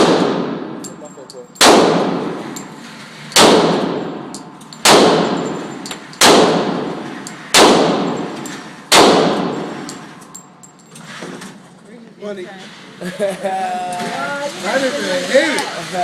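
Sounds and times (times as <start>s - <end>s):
gunshots echoing: 0.0s - 0.9s, 1.6s - 2.6s, 3.3s - 9.9s.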